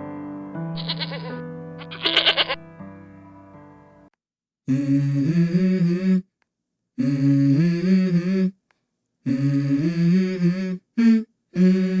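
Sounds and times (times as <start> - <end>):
bleating calls: 0.8 - 2.6.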